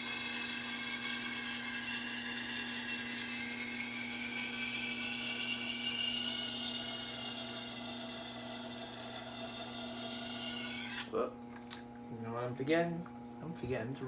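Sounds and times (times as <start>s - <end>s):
powered sharpener grinding knife: 0.0s - 11.2s.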